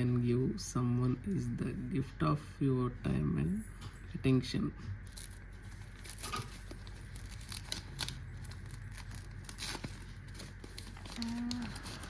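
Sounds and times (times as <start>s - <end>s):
paper crinkling and rustling: 5.0s - 12.0s.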